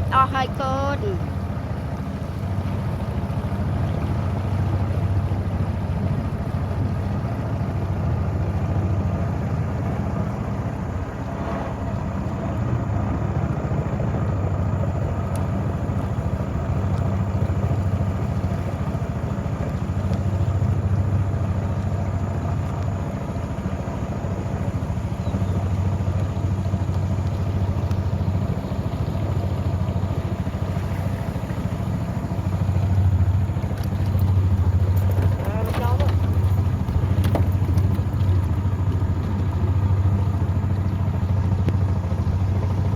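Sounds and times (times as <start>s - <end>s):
boat engine running: 0.0s - 42.9s.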